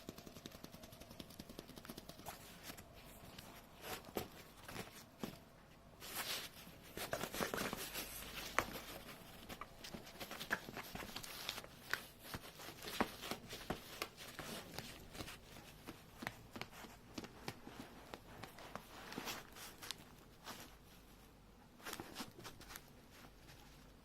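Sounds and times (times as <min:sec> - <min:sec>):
sharp clicks and taps: 0:00.0 - 0:02.3.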